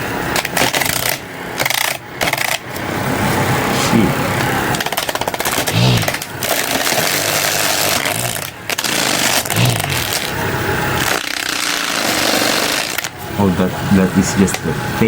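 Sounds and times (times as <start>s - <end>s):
small electric motor running: 0.0s - 13.3s
saw blade scraping cardboard: 4.9s - 10.3s, 11.0s - 13.1s.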